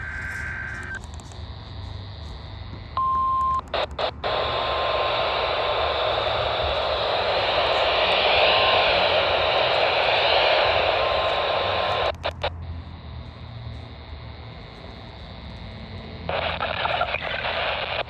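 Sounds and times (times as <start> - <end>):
steady beep: 0.0 - 1.1, 3.0 - 3.6
radio static: 0.0 - 18.0.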